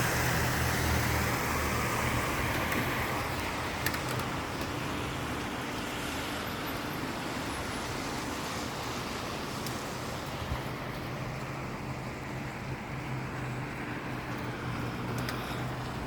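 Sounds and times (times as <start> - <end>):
road traffic hum: 0.0 - 16.0
steady rain falling: 0.0 - 16.0
faint ticks: 15.1 - 16.0.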